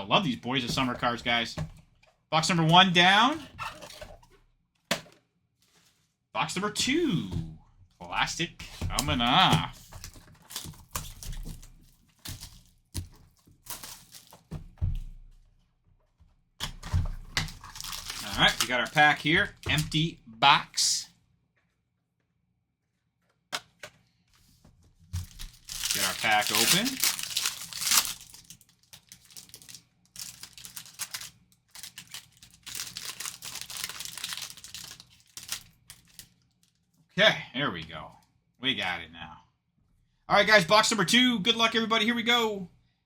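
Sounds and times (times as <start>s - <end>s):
shrink wrap crinkling: 8.9s - 14.5s, 17.3s - 20.1s, 25.2s - 36.9s.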